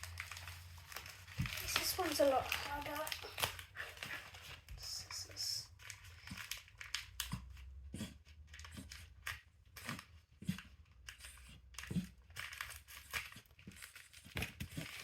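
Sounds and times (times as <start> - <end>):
packaging crinkling and tearing: 0.0 - 7.7, 10.9 - 15.0.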